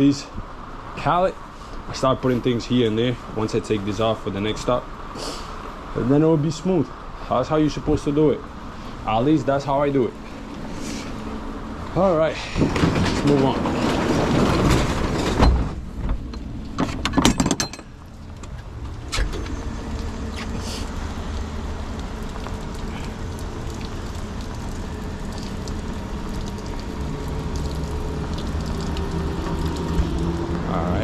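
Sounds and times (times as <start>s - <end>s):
low mechanical hum: 0.0s - 31.0s
handling knocks and rattles: 12.4s - 20.5s.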